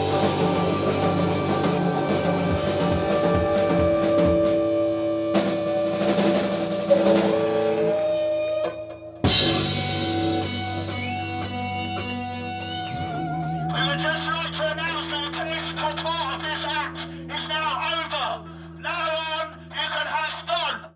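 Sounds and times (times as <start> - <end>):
cymbal crash: 0.0 - 4.6, 9.2 - 11.2
live rock band playing: 0.0 - 16.0.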